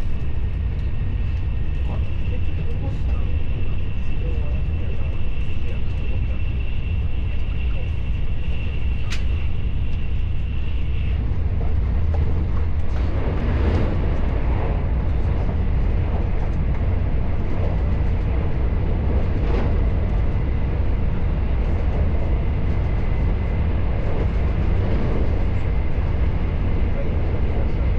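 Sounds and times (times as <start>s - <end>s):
train rumbling: 0.0s - 27.9s
scattered clicks: 9.0s - 10.0s.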